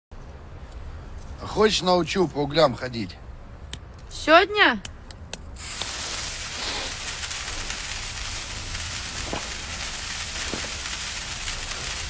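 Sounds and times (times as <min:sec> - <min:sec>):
firework hissing and crackling: 0:05.6 - 0:12.0.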